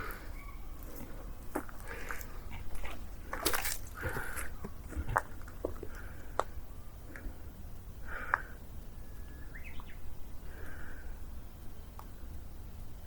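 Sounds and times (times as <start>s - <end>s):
short bird calls: 0.0s - 0.8s
steady low rumble: 0.0s - 13.0s.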